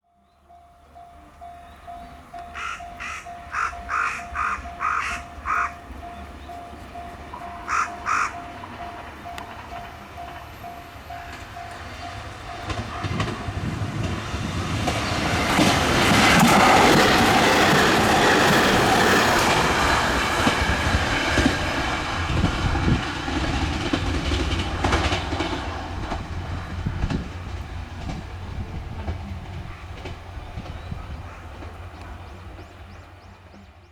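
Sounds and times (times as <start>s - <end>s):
train passing at high speed: 0.4s - 33.9s
crow cawing: 2.5s - 5.9s, 7.6s - 8.5s.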